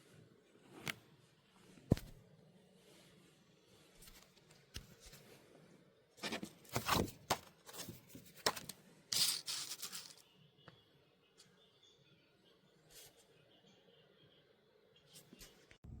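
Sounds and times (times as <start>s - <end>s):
handling rustles and scrapes: 0.0s - 10.2s.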